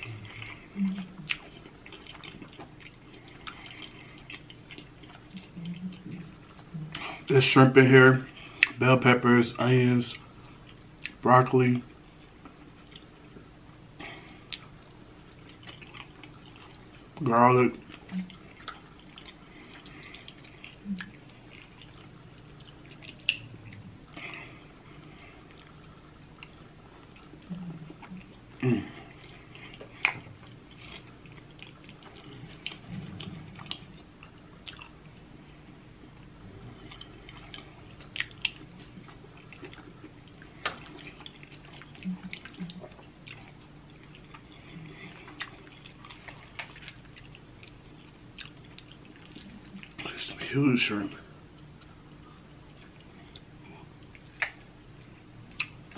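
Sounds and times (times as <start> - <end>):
wet chewing: 0.0 - 7.3, 12.2 - 35.4, 36.2 - 50.1, 51.5 - 55.9
faint low hum: 0.0 - 55.9
mouth smacks and clicks: 38.0 - 39.8, 53.3 - 54.7, 55.5 - 55.9.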